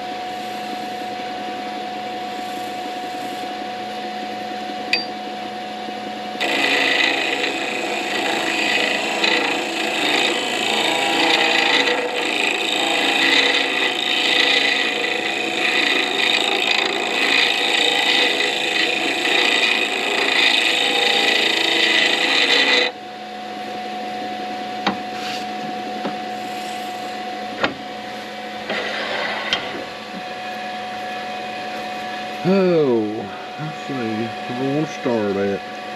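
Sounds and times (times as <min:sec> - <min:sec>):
wood lathe humming: 0:00.0 - 0:04.4, 0:06.4 - 0:23.0, 0:28.0 - 0:35.9
rasping scrape on spinning wood: 0:00.3 - 0:01.2, 0:02.3 - 0:03.6, 0:06.4 - 0:22.9, 0:26.4 - 0:27.2, 0:28.6 - 0:29.8.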